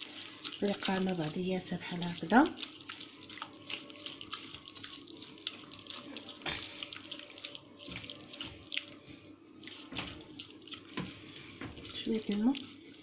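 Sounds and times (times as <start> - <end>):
marinade squelching in a bowl: 0.0 - 13.0.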